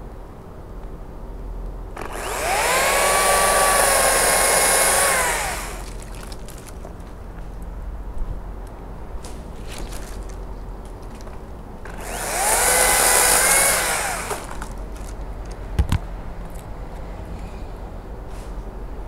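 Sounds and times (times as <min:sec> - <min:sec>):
electric chainsaw whine: 0:02.0 - 0:06.0, 0:11.9 - 0:14.7.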